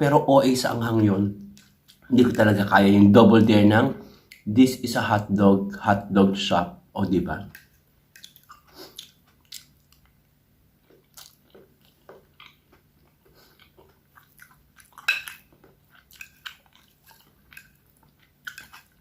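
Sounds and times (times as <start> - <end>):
person chewing food: 1.4 - 2.5, 7.5 - 19.0.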